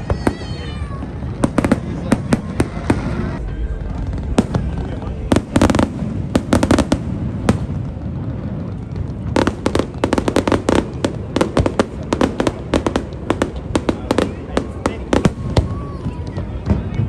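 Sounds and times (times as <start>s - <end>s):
fireworks bangs and crackles: 0.0s - 17.0s.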